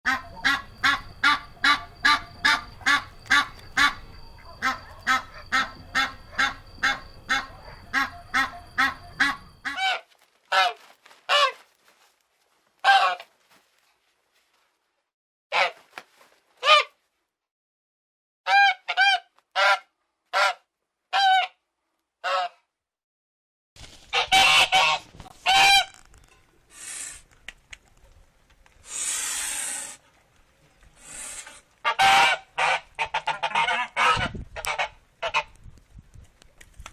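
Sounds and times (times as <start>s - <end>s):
goose honking: 0.1s - 10.7s, 24.2s - 25.9s, 31.0s - 35.5s
background noise: 0.1s - 17.4s, 18.5s - 22.8s, 23.8s - 36.9s
goose hissing: 26.7s - 27.3s, 28.8s - 30.0s, 31.0s - 31.6s.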